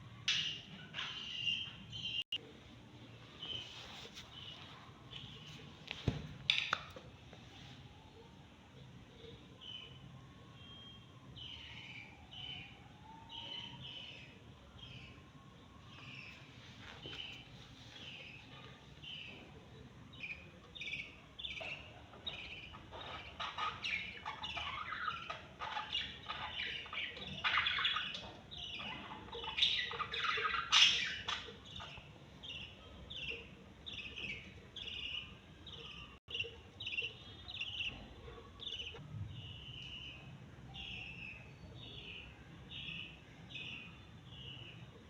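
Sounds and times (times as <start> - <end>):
baby lovebirds squawking: 22.4 - 28.0.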